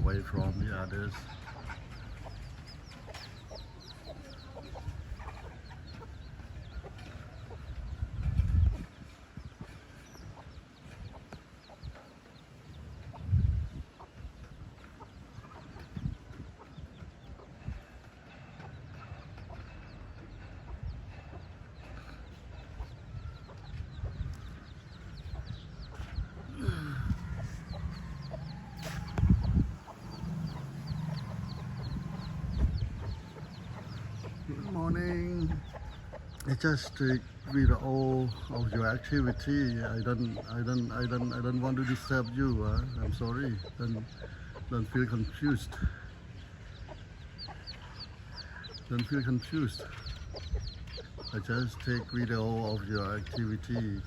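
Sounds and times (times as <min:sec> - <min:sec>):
chicks peeping: 0:00.0 - 0:54.0
hen clucking: 0:00.0 - 0:54.0
steady low rumble: 0:12.6 - 0:49.0
low rumble: 0:23.2 - 0:36.1.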